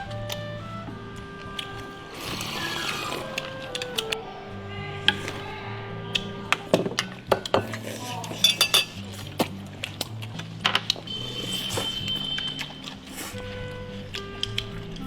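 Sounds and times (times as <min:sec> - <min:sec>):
background music: 0:00.0 - 0:15.0
utensils clinking against dishes: 0:06.2 - 0:09.6, 0:10.4 - 0:13.6.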